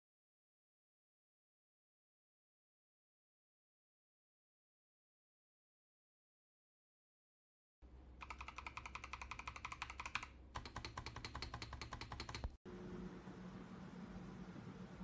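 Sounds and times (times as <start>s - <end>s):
low steady hum: 7.8s - 8.6s, 12.7s - 15.0s
fast typing on mechanical keyboard: 8.2s - 12.6s.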